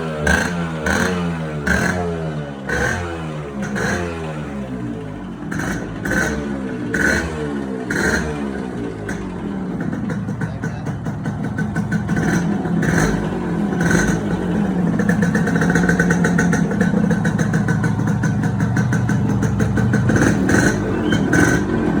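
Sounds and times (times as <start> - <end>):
two-stroke motorcycle engine running: 0.0 - 22.0.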